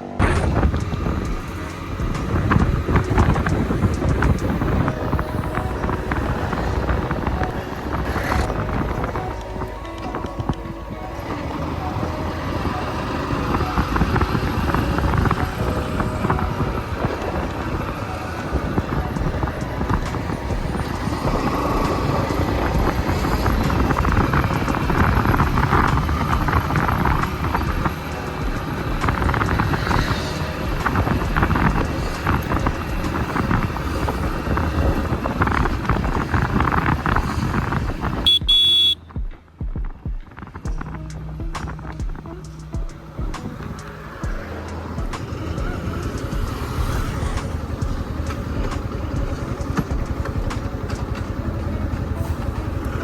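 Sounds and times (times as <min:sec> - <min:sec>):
wind buffeting microphone: 0:00.0 - 0:38.4
motorcycle engine running: 0:00.0 - 0:53.0
short horn beep: 0:38.2 - 0:39.1.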